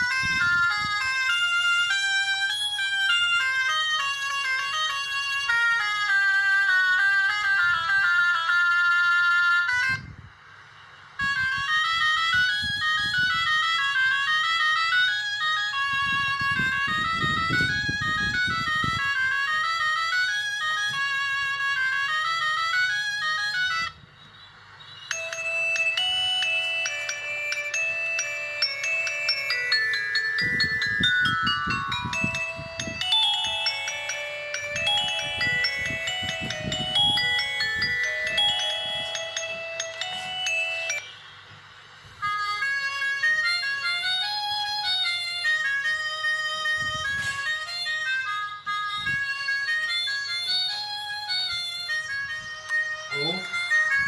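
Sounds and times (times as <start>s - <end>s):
electronic phone ringtone melody: 0.0s - 10.2s, 11.2s - 24.0s, 25.0s - 41.3s, 42.1s - 54.0s
bell-like mallet ringtone: 25.1s - 41.3s.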